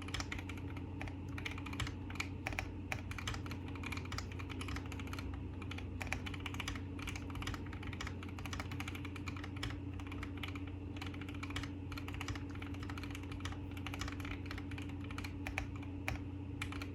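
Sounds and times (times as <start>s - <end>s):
mechanical keyboard typing: 0.0s - 16.9s
steady low hum: 0.0s - 16.9s.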